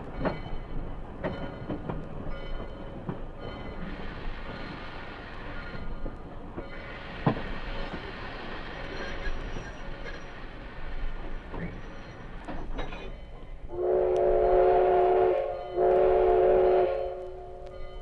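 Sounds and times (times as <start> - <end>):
steam locomotive running: 0.0 - 18.0
steam whistle chord: 13.7 - 17.8.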